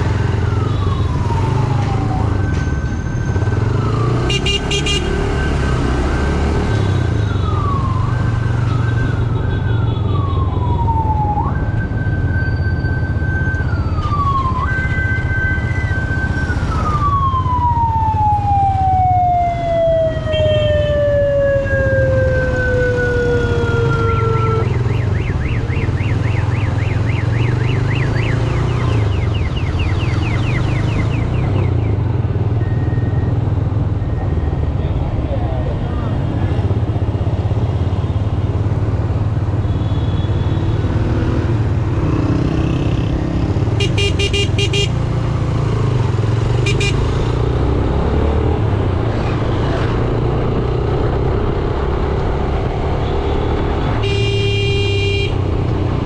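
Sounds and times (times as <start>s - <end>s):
siren wailing: 0.0s - 4.4s, 6.7s - 34.8s
motorcycle and traffic rumble: 0.0s - 56.0s
fast warbling siren tone: 10.1s - 31.9s.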